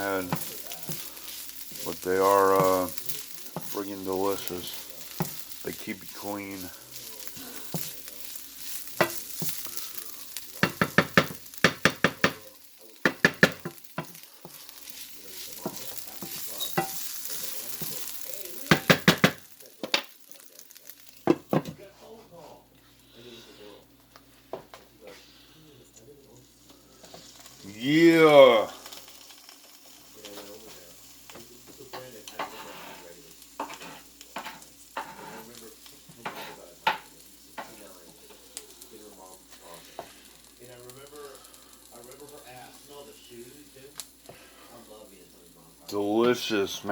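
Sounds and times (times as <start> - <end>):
food sizzling in a frying pan: 0.0 - 46.9
spatula knocking and scraping pan: 0.2 - 5.5, 9.0 - 9.7, 10.6 - 12.4, 13.0 - 18.0, 18.7 - 19.5, 31.9 - 35.5, 36.2 - 37.8.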